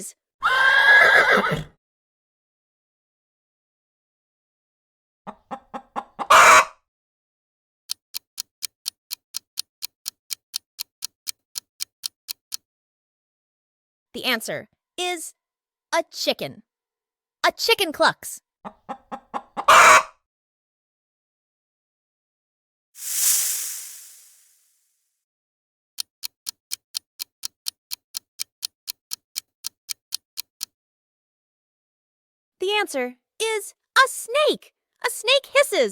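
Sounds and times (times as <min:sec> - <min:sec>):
clock ticking: 0:07.9 - 0:12.6, 0:26.0 - 0:30.7.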